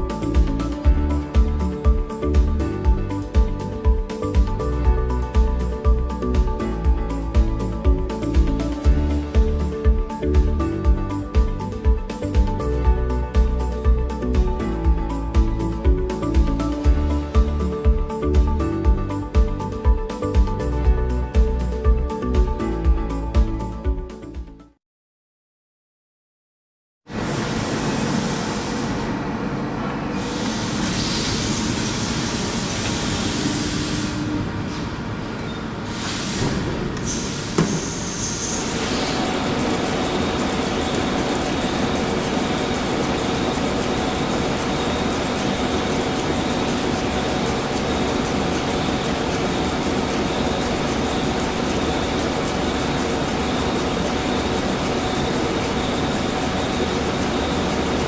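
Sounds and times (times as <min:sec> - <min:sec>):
heavy industrial machinery running: 0:27.1 - 0:58.0.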